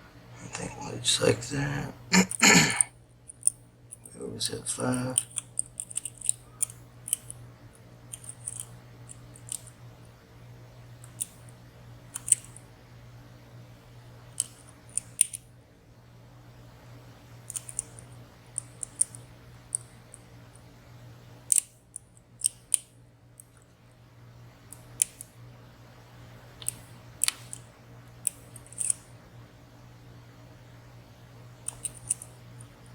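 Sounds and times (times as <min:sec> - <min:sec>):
faint steady hum: 0:00.0 - 0:32.9
lock picks clicking in padlock: 0:05.2 - 0:07.4.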